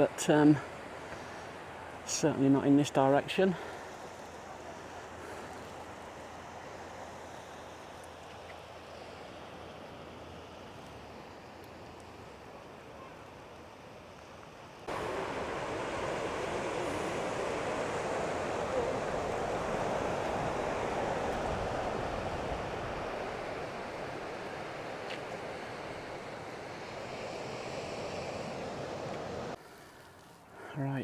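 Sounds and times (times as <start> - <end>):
sea surf washing in: 0.0 - 12.8, 14.6 - 29.6
wind on microphone: 14.9 - 29.6.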